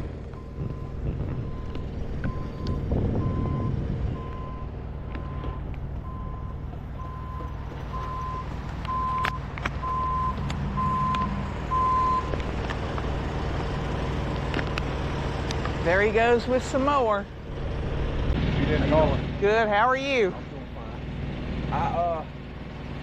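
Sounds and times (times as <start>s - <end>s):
low engine hum: 0.0s - 23.0s
vehicle backup alarm beeping: 0.3s - 12.4s.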